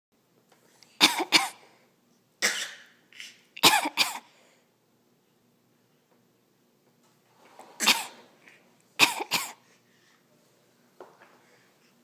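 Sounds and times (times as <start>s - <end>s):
people coughing: 3.6s - 4.3s, 7.8s - 8.3s, 9.0s - 9.6s.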